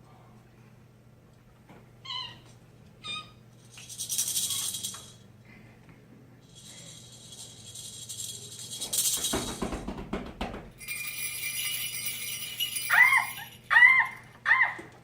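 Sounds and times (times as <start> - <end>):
jingling bell-like rattle: 3.8 - 5.2, 6.4 - 9.4, 10.8 - 14.3.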